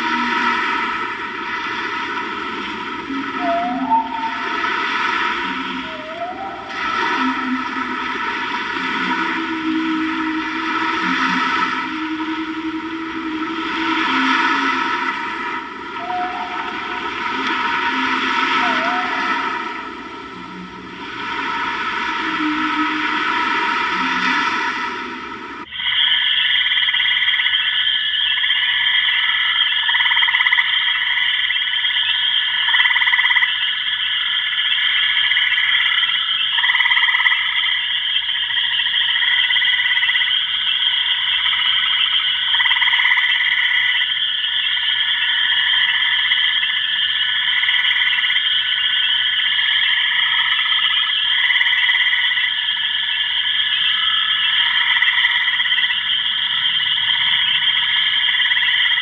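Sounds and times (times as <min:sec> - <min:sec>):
chorus of high trilling calls: 0:03.0 - 0:24.4.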